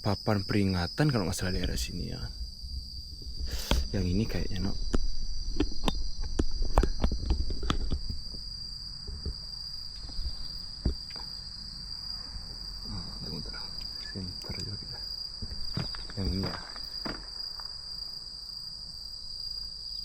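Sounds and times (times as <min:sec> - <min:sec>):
night insects trilling: 0:00.0 - 0:20.0
footsteps: 0:15.3 - 0:18.0.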